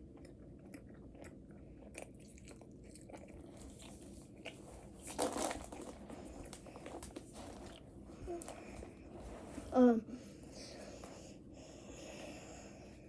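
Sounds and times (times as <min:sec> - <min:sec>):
person chewing and biting food: 0:00.0 - 0:07.8.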